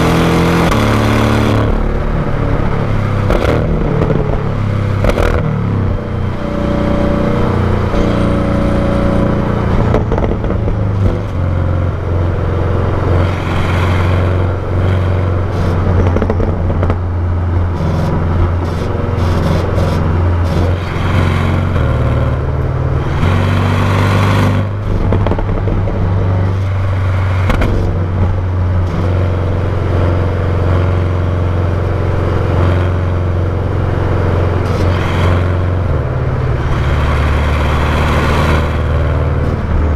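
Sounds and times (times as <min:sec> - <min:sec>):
car exhaust droning: 0:00.0 - 0:39.9
bursts of rushing noise: 0:33.8 - 0:39.9.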